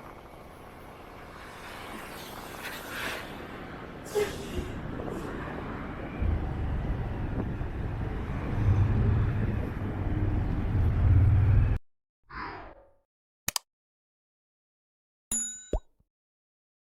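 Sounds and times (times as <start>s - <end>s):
roadside traffic noise: 0.0s - 11.8s
large vehicle rumbling past: 5.5s - 11.8s.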